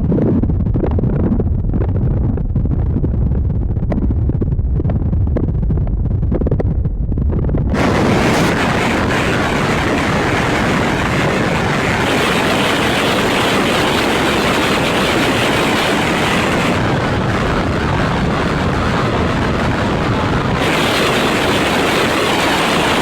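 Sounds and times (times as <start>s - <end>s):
distorted synthesizer noise: 5.4s - 23.0s.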